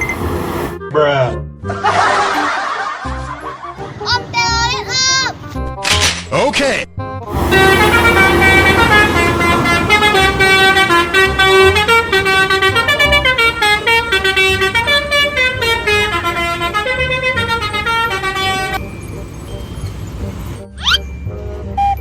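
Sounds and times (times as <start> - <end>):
musical air horn playing a tune: 7.2 - 18.9.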